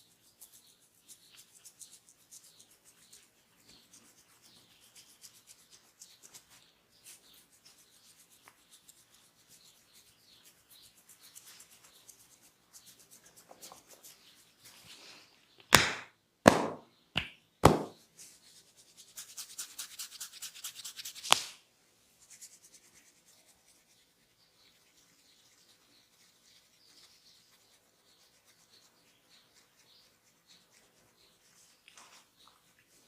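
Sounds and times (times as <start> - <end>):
hands rubbing and scratching skin: 0.0 - 33.0
hand slapping skin: 15.6 - 18.0, 21.1 - 21.6.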